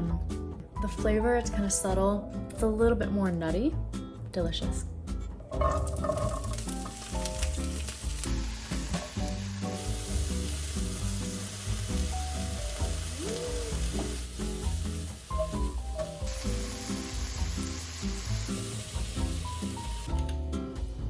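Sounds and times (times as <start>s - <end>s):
background music: 0.0s - 21.0s
food sizzling in a pan: 5.6s - 20.2s.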